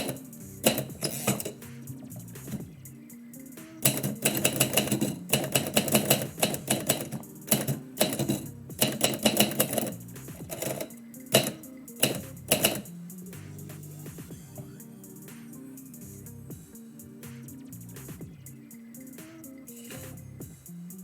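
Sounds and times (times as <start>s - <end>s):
quiet background music: 0.0s - 21.0s
typewriter keys clicking: 3.8s - 12.9s.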